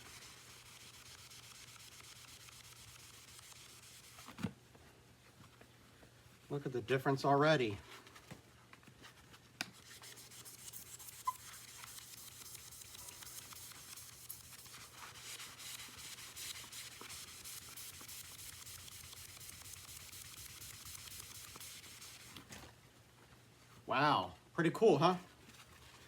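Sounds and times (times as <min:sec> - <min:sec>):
scrubbing plastic by hand: 0:00.0 - 0:04.4, 0:09.7 - 0:22.6.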